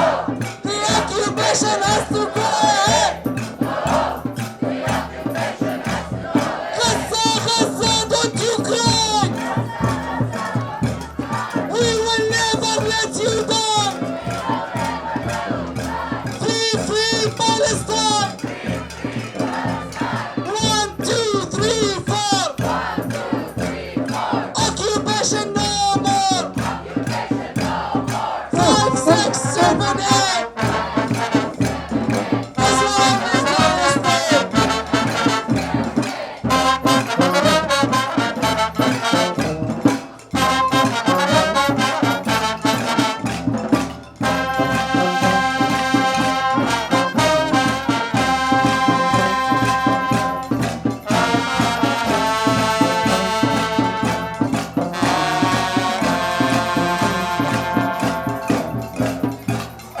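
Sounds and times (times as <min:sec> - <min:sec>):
brass music: 0:00.0 - 1:00.0
steady drum beat: 0:00.0 - 1:00.0.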